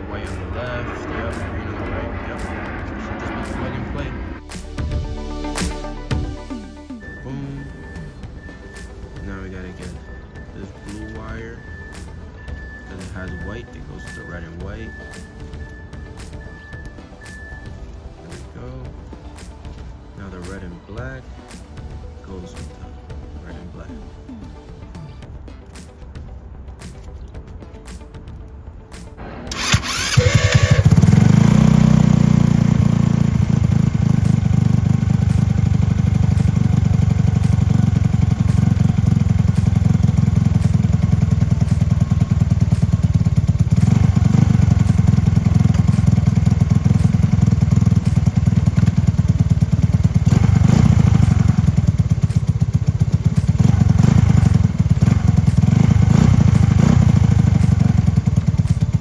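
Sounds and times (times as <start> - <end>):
moped engine running: 29.5 - 59.0.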